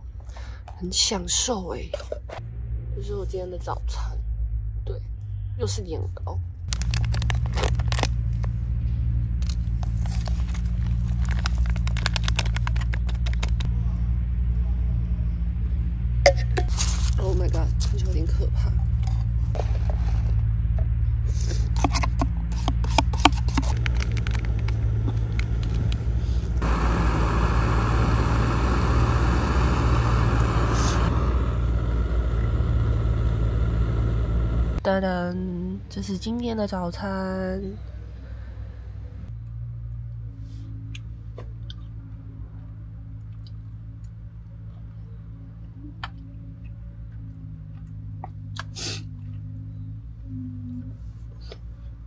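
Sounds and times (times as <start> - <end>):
food crackling and spitting: 6.7 - 8.3, 9.8 - 13.7, 21.7 - 32.1
burner low rumble: 23.8 - 34.9.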